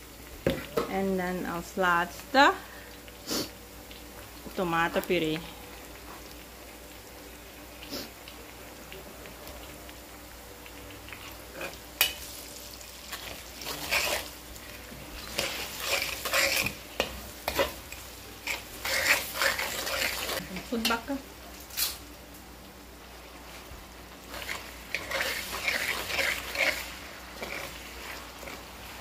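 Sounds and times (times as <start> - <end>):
paste frying in oil: 0.0 - 29.0
spoon scraping pan: 13.1 - 21.0, 24.3 - 29.0.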